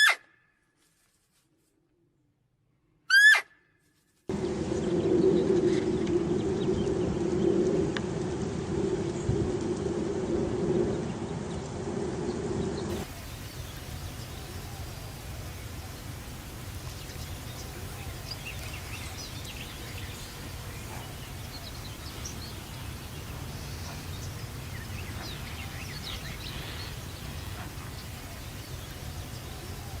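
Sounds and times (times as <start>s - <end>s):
low background rumble: 4.3s - 30.0s.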